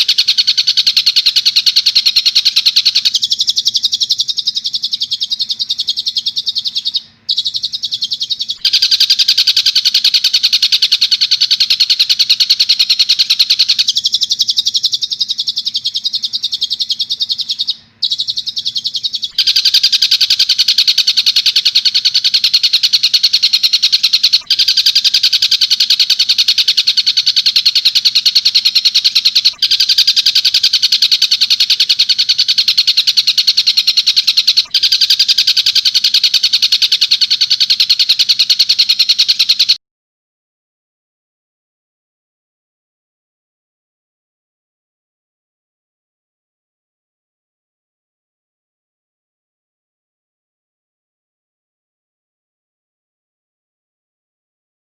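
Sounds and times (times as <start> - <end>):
faint electrical hum: 0.0 - 39.2
bird chattering call: 0.0 - 39.8.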